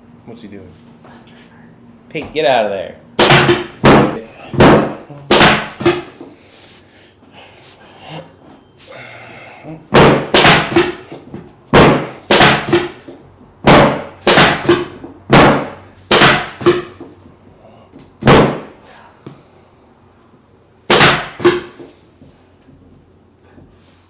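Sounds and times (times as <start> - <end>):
table section slamming down: 3.2 - 6.2, 10.0 - 11.1, 11.8 - 13.0, 13.7 - 17.0, 20.9 - 21.8.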